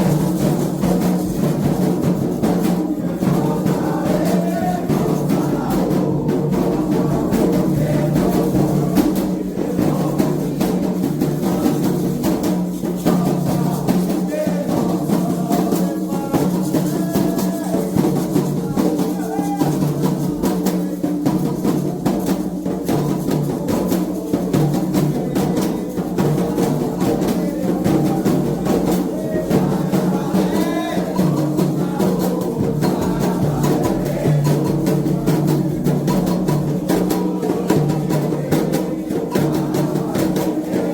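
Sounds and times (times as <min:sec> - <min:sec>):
hand drums playing fast rhythm: 0:00.0 - 0:40.9.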